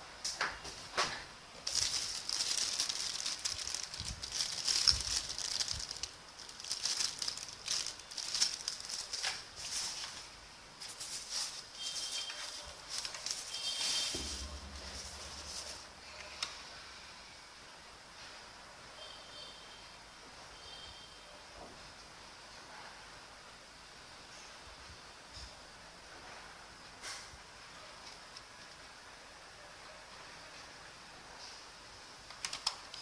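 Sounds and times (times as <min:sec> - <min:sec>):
packaging rustling and crinkling: 0:00.6 - 0:16.0.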